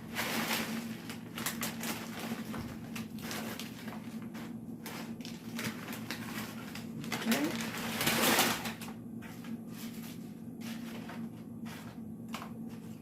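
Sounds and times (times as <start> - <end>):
tortilla chips rustling and crackling: 0.0 - 9.0
steady low hum: 0.0 - 13.0.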